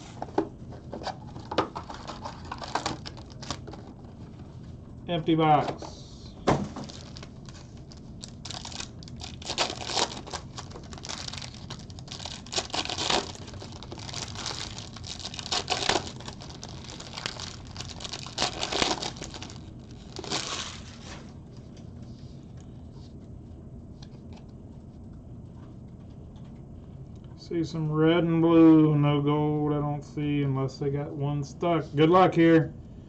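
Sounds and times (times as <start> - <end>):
plastic wrappers tearing and crinkling: 1.1 - 3.9, 6.7 - 21.3.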